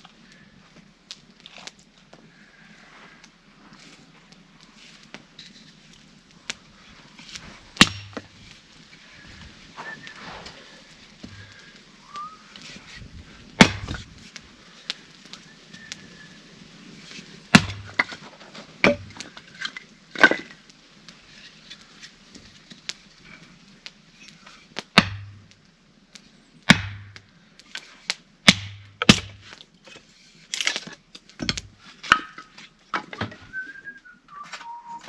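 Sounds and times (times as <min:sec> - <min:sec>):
axe chopping firewood: 0:07.8 - 0:08.3, 0:13.6 - 0:14.1, 0:17.5 - 0:19.3, 0:24.8 - 0:25.5, 0:26.7 - 0:27.2, 0:28.5 - 0:29.6, 0:30.6 - 0:33.3.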